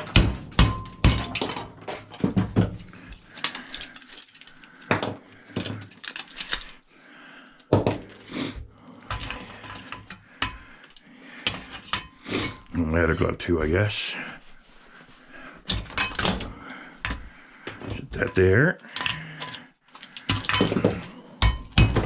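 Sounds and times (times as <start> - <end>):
metal parts clinking and clattering: 0.0 - 6.9, 9.1 - 12.7, 15.7 - 17.2, 18.2 - 22.0.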